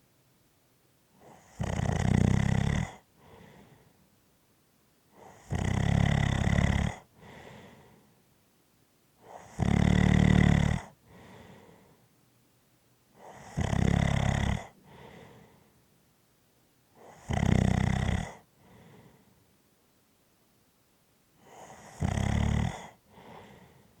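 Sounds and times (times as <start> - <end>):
person snoring: 1.2 - 3.6, 5.2 - 7.4, 9.2 - 11.4, 13.2 - 14.8, 17.0 - 18.5, 21.4 - 23.7
soft breaths: 2.9 - 4.3, 6.8 - 8.4, 9.2 - 12.3, 13.1 - 16.1, 18.2 - 19.8, 21.3 - 24.0.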